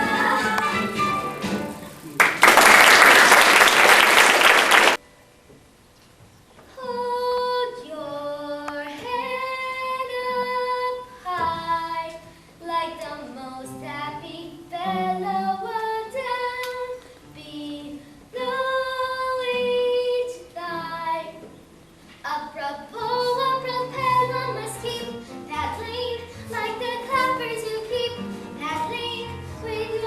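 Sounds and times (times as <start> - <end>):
children singing: 0.0 - 1.3.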